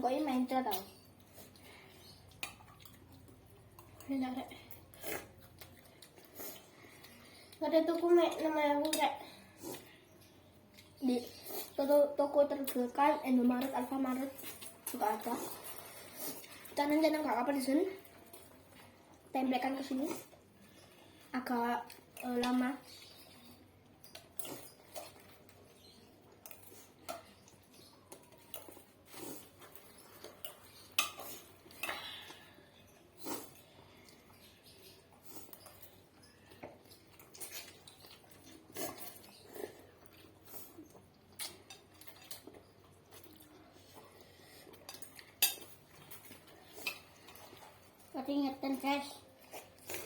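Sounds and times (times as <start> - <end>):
mouth noises chewing noodles: 0.8 - 7.6, 24.4 - 48.2
utensils clinking against a bowl: 29.6 - 32.5.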